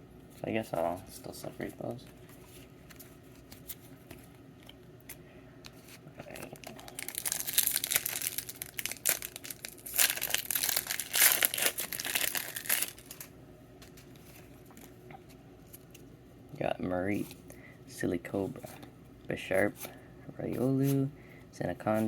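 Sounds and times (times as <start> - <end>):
foil wrapper crinkling and tearing: 6.3 - 13.3.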